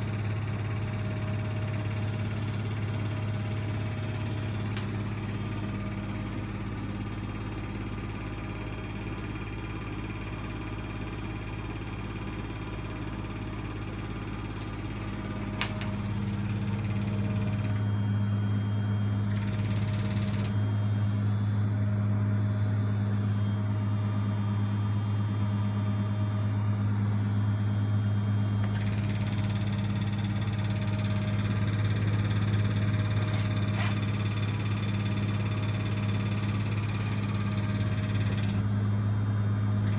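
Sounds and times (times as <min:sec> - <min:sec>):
washing machine spin hum: 0:00.0 - 0:39.9.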